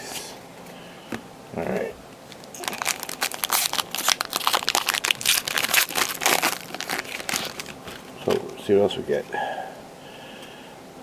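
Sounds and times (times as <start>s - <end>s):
wrapper crinkling and crackling: 2.3s - 8.4s.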